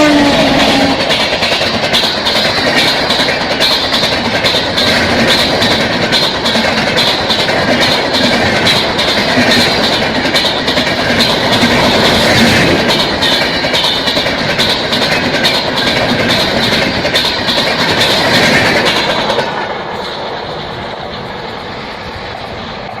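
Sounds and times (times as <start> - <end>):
train wheels clattering on rail joints: 0.0 - 23.0.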